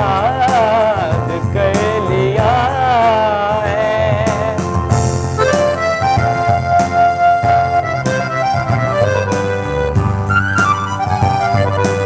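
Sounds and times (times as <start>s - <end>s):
bass notes: 0.0s - 12.0s
free-reed keyboard melody: 0.0s - 12.0s
light percussive strikes: 4.2s - 12.0s.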